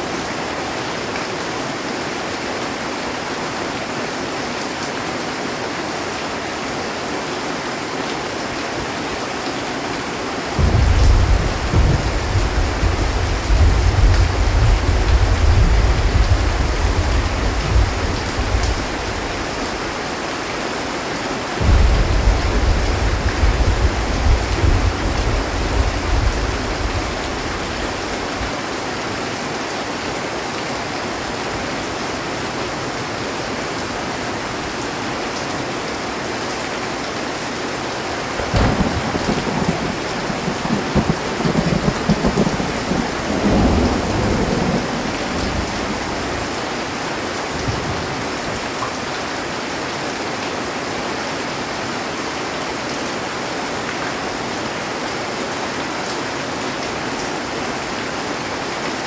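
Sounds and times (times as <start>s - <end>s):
heavy rain on a metal roof: 0.0s - 59.0s
thunder rumbling: 10.6s - 20.0s, 21.6s - 28.5s, 38.2s - 48.6s.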